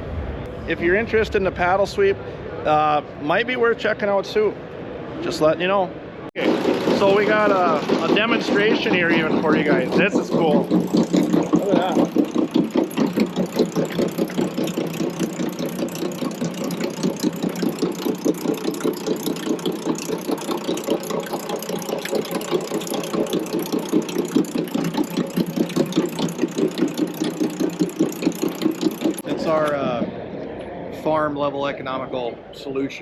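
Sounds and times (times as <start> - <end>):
machine paddles beating steadily: 6.4 - 30.4.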